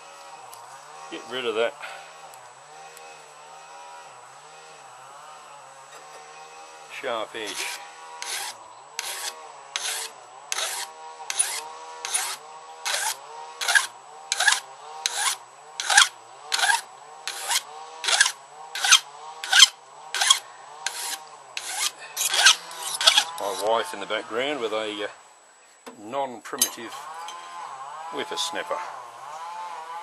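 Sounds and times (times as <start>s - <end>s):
line trimmer engine: 0.0s - 24.3s, 26.7s - 30.0s
hand file rasping on steel: 7.4s - 23.7s.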